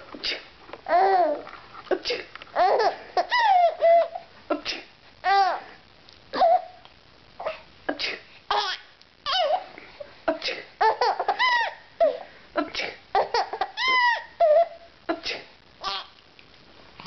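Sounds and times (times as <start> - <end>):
baby laughing and squealing: 2.6 - 4.3, 8.5 - 9.7, 10.8 - 12.2, 13.2 - 14.8, 15.8 - 16.1.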